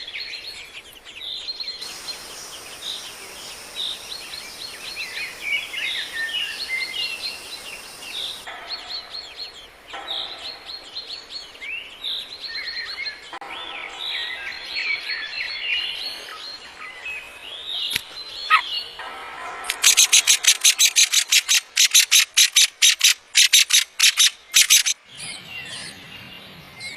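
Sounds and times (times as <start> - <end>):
small songbirds chirping: 0.0 - 19.0, 19.7 - 26.9
sharp click: 19.7 - 25.0.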